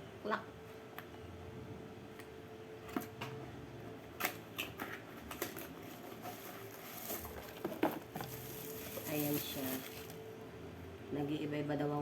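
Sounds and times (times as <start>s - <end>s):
plastic clicks and crinkles: 4.2s - 10.2s.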